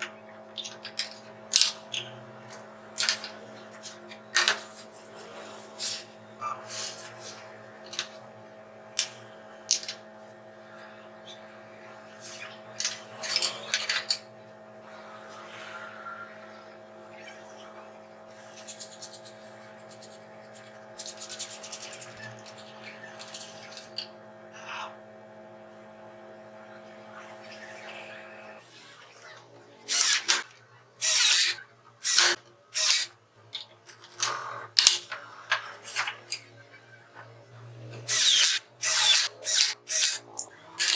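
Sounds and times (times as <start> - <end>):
electrical hum: 0.0 - 40.9.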